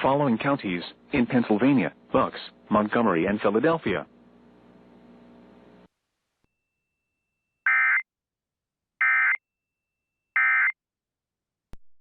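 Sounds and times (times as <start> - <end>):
faint hum: 0.0 - 6.6.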